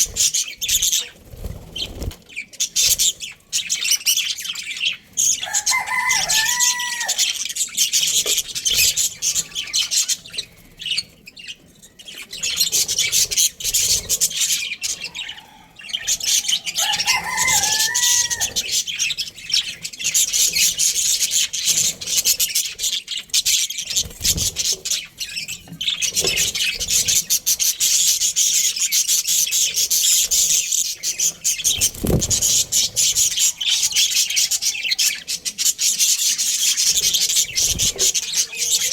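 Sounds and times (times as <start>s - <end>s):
loud gliding bird calls: 0.0s - 24.0s, 24.6s - 38.9s
budgerigars chirping: 0.0s - 38.9s.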